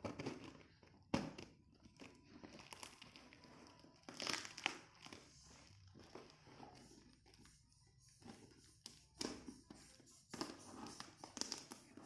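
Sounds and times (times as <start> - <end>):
packaging crinkling and tearing: 0.0 - 7.5.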